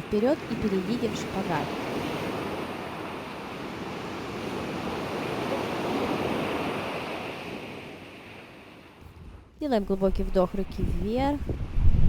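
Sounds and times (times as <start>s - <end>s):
sea surf washing: 0.0s - 9.0s.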